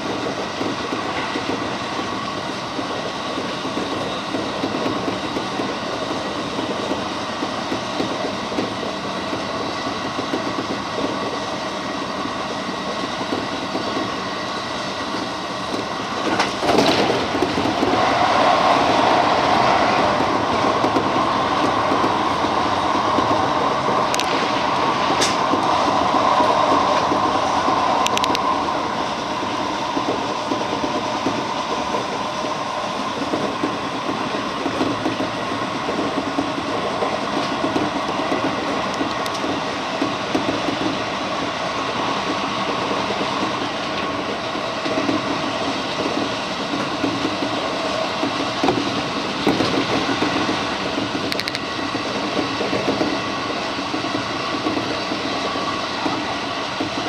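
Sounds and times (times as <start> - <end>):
train wheels rumbling on rail: 0.0 - 57.0
sharp clicks of wheels: 15.0 - 57.0.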